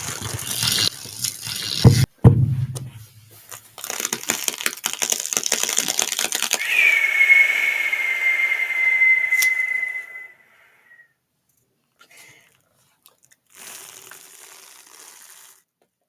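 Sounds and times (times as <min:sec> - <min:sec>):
rapid clicking and crackling: 0:00.0 - 0:02.1, 0:03.8 - 0:06.6
sharp thump: 0:01.9 - 0:03.2
high held squeal: 0:06.6 - 0:11.0.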